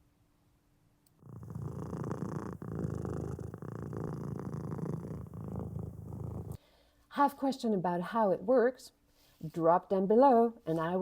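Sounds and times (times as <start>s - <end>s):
cat purring: 1.2s - 6.6s.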